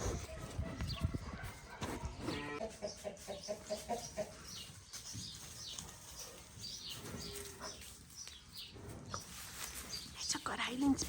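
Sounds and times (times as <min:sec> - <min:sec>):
chickens clucking: 0:00.0 - 0:09.4.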